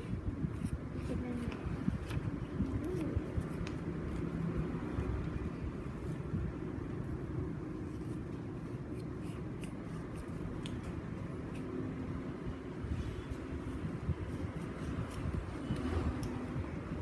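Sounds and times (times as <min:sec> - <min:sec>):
paper rustling: 0:13.6 - 0:15.9
scissors cutting paper: 0:14.3 - 0:16.4.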